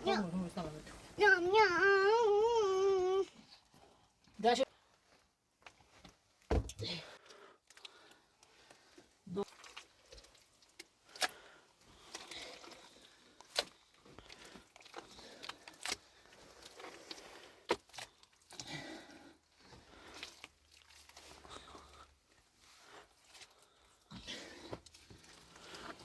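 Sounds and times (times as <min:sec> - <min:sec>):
faint rustling handling noise: 0:00.0 - 0:01.8, 0:02.9 - 0:06.7.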